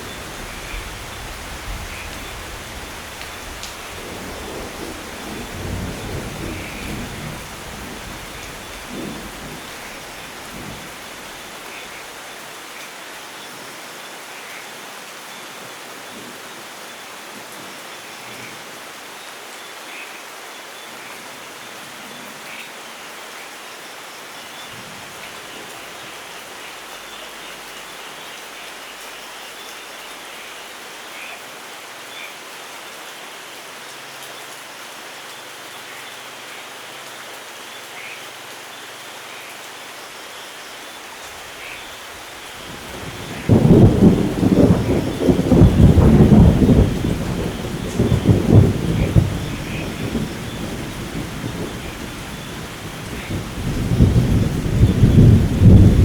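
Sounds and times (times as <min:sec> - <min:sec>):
thunder rumbling: 0:00.0 - 0:11.6, 0:42.5 - 0:56.0
heavy rain: 0:00.0 - 0:56.0.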